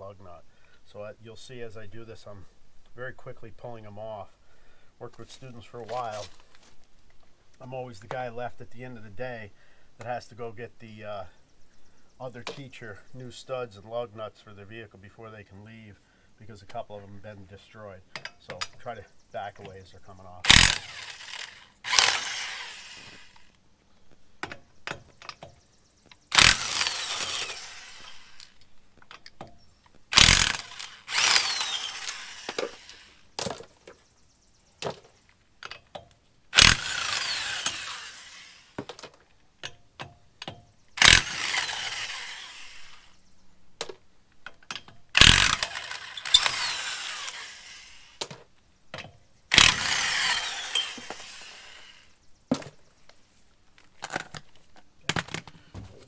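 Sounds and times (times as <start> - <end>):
impact wrench spinning nuts: 20.5 - 23.5, 26.3 - 28.6, 30.1 - 33.7, 36.6 - 39.0, 41.0 - 43.1, 45.2 - 48.4, 49.5 - 52.0.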